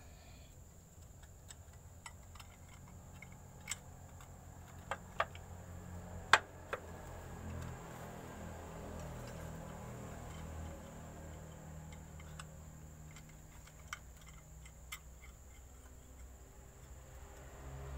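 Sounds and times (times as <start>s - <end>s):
small metal parts clicking: 0.8s - 5.7s, 9.0s - 17.5s.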